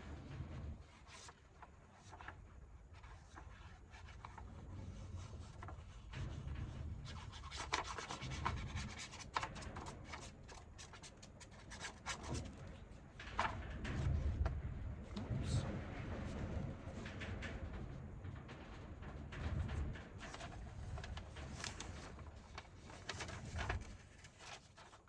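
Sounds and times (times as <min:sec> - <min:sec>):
paper rubbing and crackling: 0:00.8 - 0:14.3, 0:20.2 - 0:25.0.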